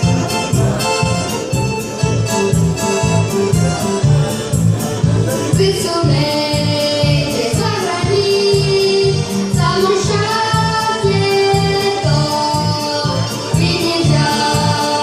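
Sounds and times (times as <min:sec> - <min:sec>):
pulsing bass beat: 0:00.0 - 0:15.0
pop dance song with singing: 0:04.0 - 0:15.0.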